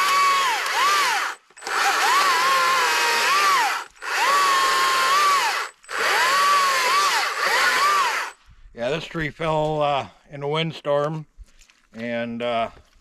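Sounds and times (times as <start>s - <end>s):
electric chainsaw cutting wood: 0.0s - 8.4s.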